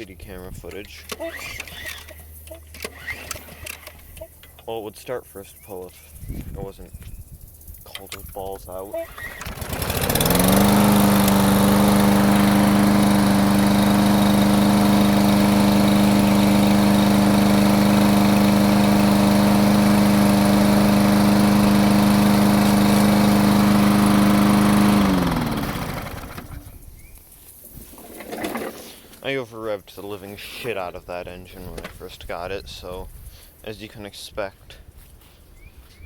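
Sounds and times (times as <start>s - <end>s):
lawn mower engine running: 0.0s - 4.7s, 7.9s - 26.8s, 27.9s - 28.9s.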